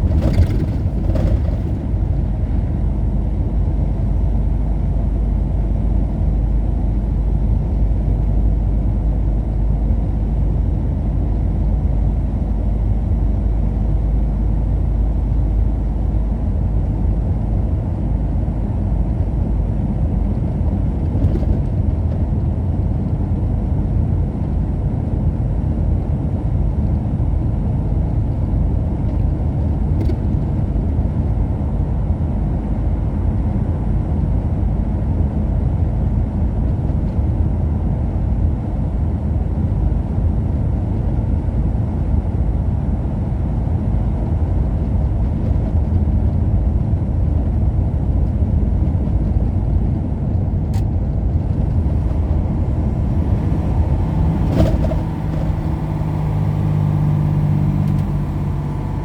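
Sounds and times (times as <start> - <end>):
vehicle driving on road: 0.0 - 59.0
low hum: 34.6 - 59.0.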